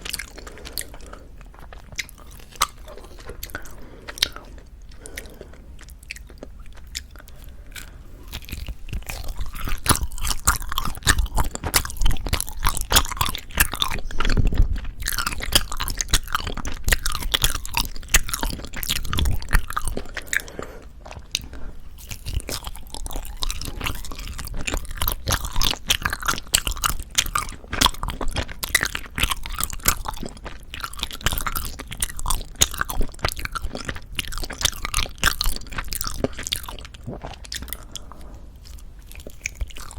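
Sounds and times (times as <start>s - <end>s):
rice cake chewing: 0.0s - 39.9s.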